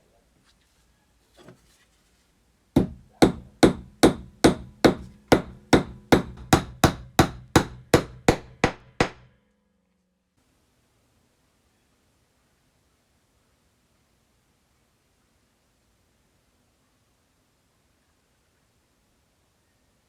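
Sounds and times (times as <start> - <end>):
hammer blows ringing: 2.8 - 9.3.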